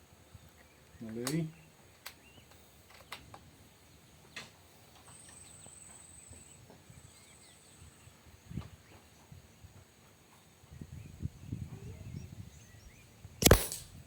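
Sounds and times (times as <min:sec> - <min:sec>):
small birds chirping: 0:00.0 - 0:13.8
sharp click: 0:13.4 - 0:14.0.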